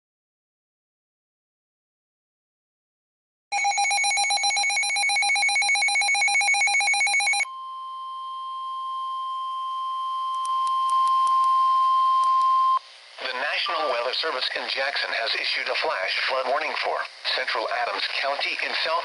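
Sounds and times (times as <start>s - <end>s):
rapidly pulsing electronic ring: 3.5s - 7.4s
steady alarm tone: 3.5s - 12.8s.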